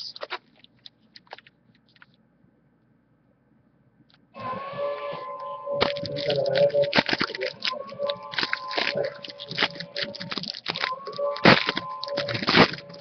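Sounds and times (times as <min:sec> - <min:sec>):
foil wrappers crinkling: 0:05.8 - 0:13.0.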